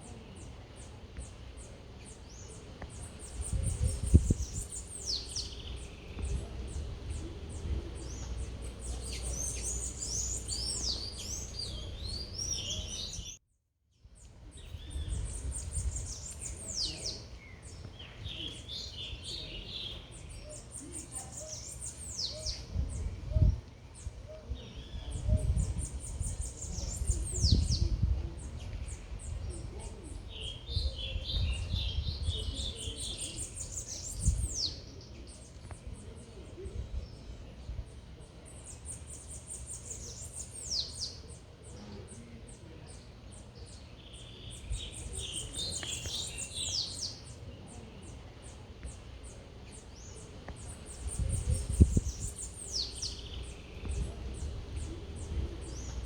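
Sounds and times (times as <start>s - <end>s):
songbird ticking and whistling: 0.4s - 13.4s, 14.2s - 28.0s, 43.3s - 56.0s.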